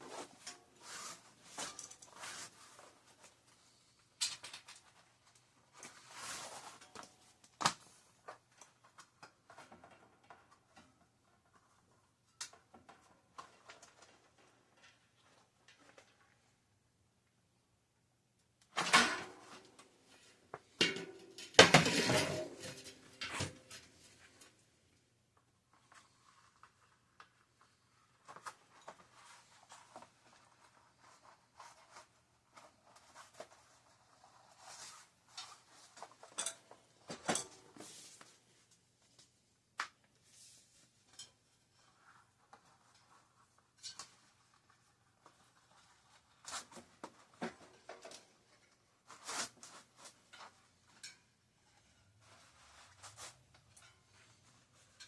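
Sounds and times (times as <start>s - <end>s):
metal parts and tools clattering: 20.8s - 24.0s, 36.2s - 37.8s.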